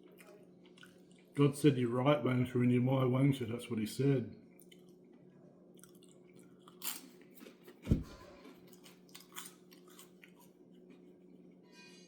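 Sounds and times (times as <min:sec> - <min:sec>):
chewing crunchy toast: 0:00.0 - 0:01.4, 0:04.5 - 0:11.6.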